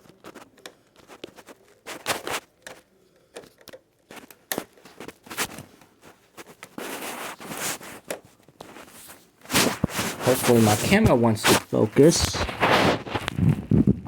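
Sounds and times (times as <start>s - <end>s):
plastic casing scraping: 6.4s - 14.0s.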